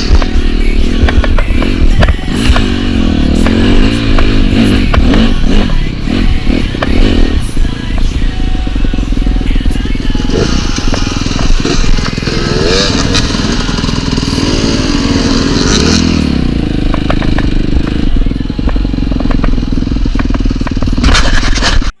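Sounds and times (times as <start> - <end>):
dirt bike engine revving: 0.0 - 22.0
knocks and clatter: 16.9 - 18.0.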